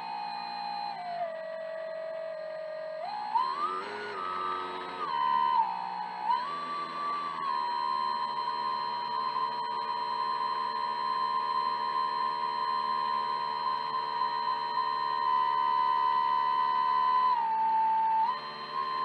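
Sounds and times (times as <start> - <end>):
electric motor high whine: 3.4 - 17.2.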